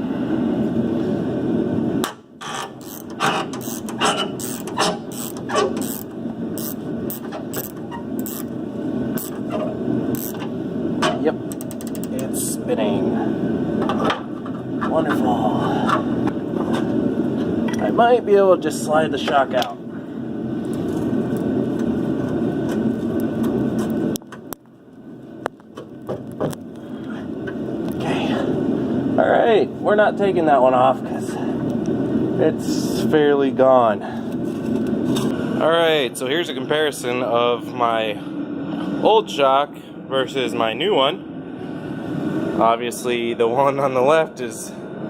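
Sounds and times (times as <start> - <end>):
low rumbling noise: 0.0 - 45.0
socket ratchet clicking: 2.8 - 8.5, 9.2 - 9.4, 10.2 - 10.4, 11.5 - 12.2
sharp metallic clicks and knocks: 10.2 - 12.3.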